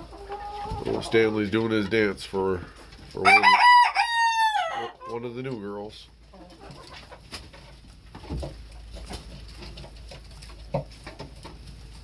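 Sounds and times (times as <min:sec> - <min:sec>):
chickens clucking: 0:00.0 - 0:12.0.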